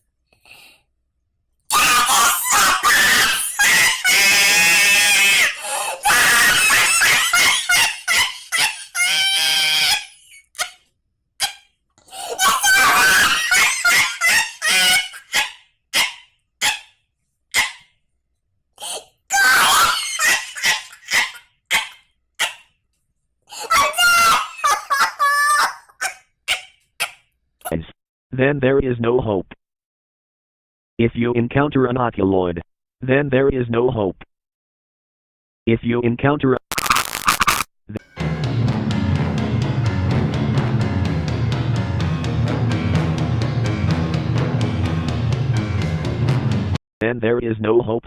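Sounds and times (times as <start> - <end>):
person screaming and shrieking: 1.7 - 10.8, 11.4 - 16.9, 18.8 - 22.6, 23.5 - 27.2
short broken-off cries: 12.1 - 15.2, 23.5 - 25.8.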